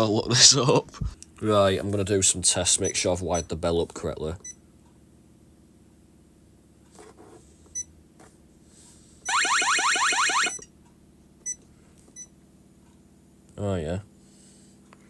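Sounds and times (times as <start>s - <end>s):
alarm siren sweeping upward: 9.3s - 10.6s.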